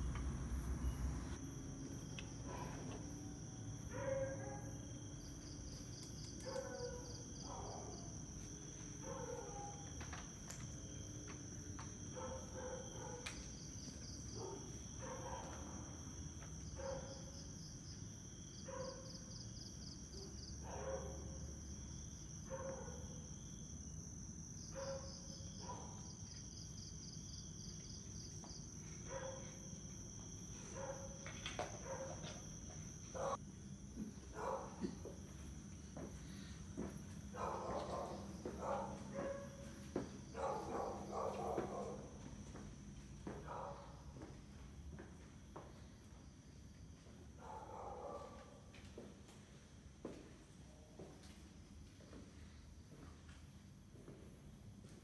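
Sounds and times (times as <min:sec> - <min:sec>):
insects trilling: 0:00.0 - 0:42.2
rapid cricket chirps: 0:00.0 - 0:48.7.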